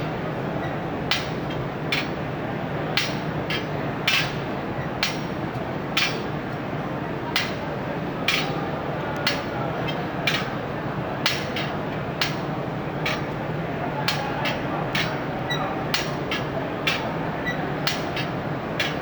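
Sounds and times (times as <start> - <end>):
constant background noise: 0.0 - 19.0
steel bars clanking: 13.0 - 13.4, 14.1 - 19.0.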